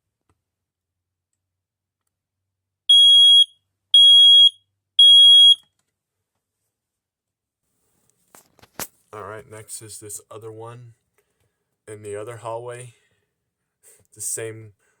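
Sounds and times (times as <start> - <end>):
smoke alarm beeps: 2.9 - 5.6.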